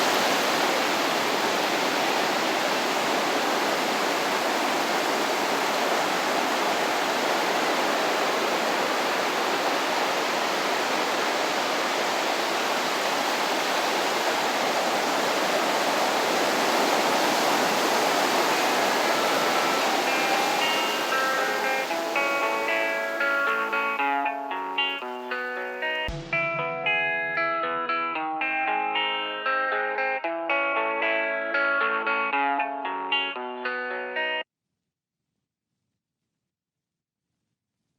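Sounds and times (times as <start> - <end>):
small waves breaking: 0.0 - 25.8
faint guitar notes: 19.6 - 34.4.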